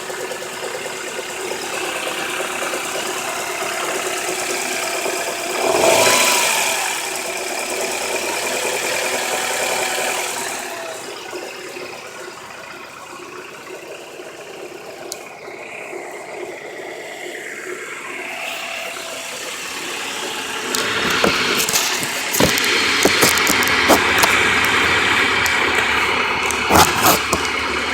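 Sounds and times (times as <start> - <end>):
car engine idling: 0.0 - 27.9
engine bearing knock: 19.5 - 27.9.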